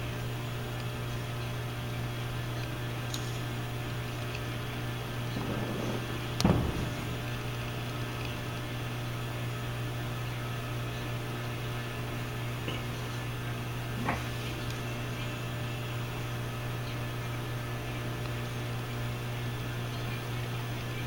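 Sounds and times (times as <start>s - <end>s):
low hum: 2.6s - 10.4s
firework bang: 5.2s - 8.9s.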